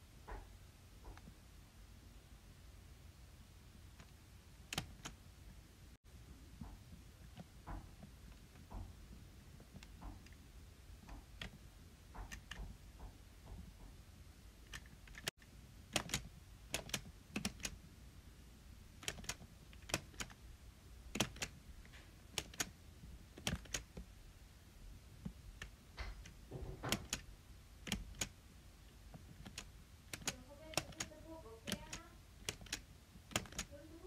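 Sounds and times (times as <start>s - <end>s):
sharp clicks: 4.7s - 5.2s, 12.2s - 12.7s, 14.6s - 17.8s, 19.0s - 20.4s, 21.1s - 21.6s, 22.3s - 22.7s, 23.4s - 24.0s, 25.2s - 28.3s, 29.2s - 33.7s.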